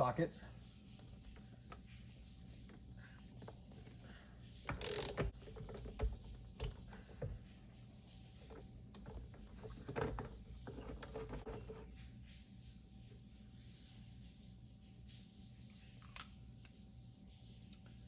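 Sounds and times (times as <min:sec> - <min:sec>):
wrench clicking on nut: 0:04.7 - 0:05.3.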